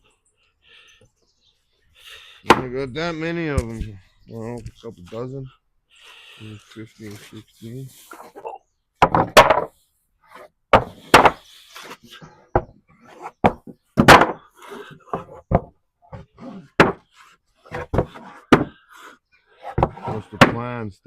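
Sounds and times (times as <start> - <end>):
hard objects knocking and banging: 2.4 - 2.8, 8.2 - 9.8, 10.7 - 11.5, 12.5 - 18.9, 19.6 - 20.7.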